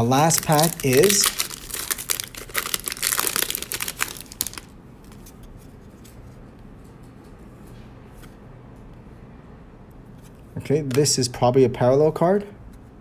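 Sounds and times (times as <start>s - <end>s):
wrapper being torn and crinkled: 0.0s - 5.2s.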